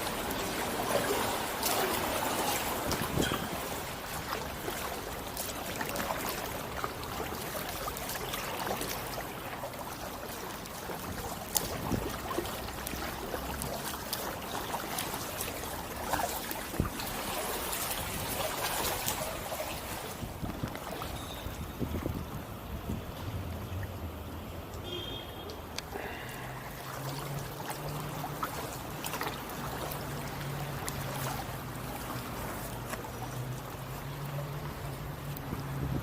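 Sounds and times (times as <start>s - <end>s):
water trickling and splashing: 0.0s - 36.0s
paddle clicks: 0.1s - 21.3s.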